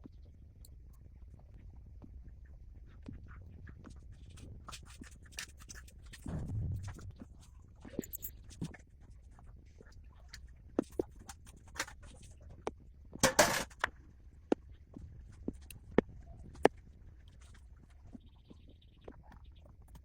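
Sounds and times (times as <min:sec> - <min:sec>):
tools clicking on watch parts: 0:08.0 - 0:08.3.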